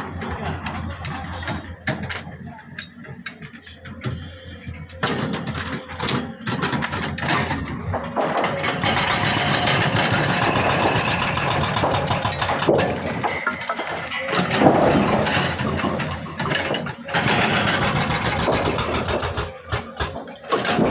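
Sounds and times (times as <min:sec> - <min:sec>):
low machine hum: 0:03.7 - 0:20.9
welding arc sizzling crackle: 0:05.2 - 0:20.9
sharp clicks: 0:08.6 - 0:20.2.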